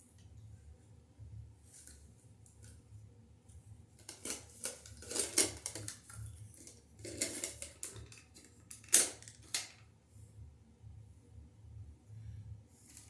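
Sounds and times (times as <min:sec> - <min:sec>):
small hard parts clattering: 0:04.1 - 0:09.8.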